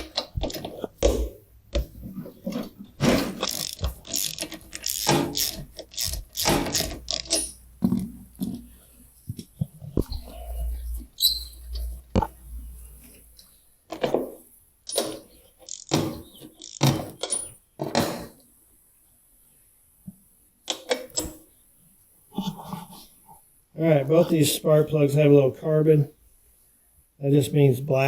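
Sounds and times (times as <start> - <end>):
ratchet wrench clicking: 3.4 - 7.6, 15.7 - 16.0, 16.6 - 16.9.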